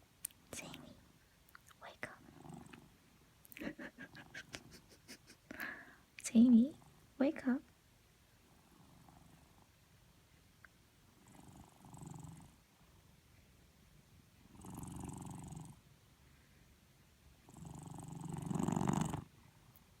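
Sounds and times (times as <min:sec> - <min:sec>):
cat snoring: 0:02.2 - 0:02.9, 0:08.5 - 0:09.7, 0:11.1 - 0:12.6, 0:14.4 - 0:15.8, 0:17.4 - 0:19.3.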